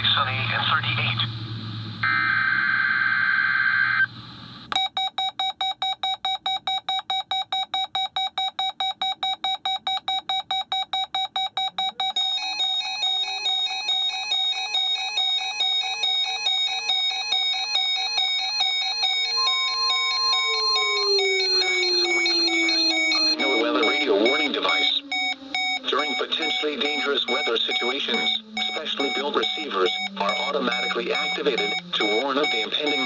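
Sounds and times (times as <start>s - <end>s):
two-tone data signal: 4.8s - 15.1s, 18.4s - 33.0s
overlapping alarm beeping: 4.8s - 33.0s
shrill electronic alarm beeping: 4.8s - 33.0s.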